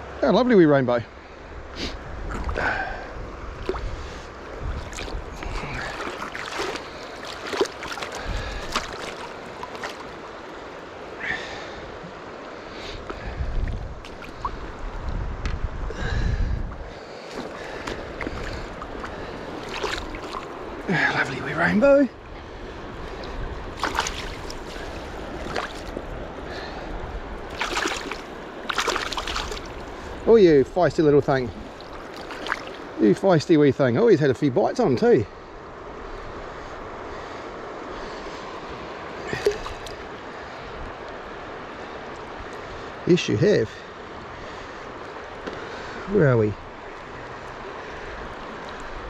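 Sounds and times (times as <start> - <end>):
river water running: 0.0 - 49.0
fish splashing and knocking: 4.8 - 10.2, 17.4 - 20.7, 23.8 - 26.0, 27.5 - 30.0, 31.7 - 32.9.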